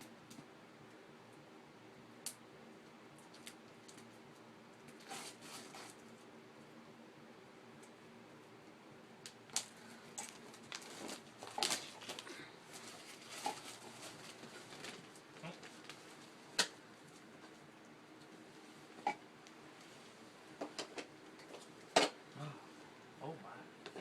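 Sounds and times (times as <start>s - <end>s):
toy packaging clicks and rustles: 9.5s - 16.0s.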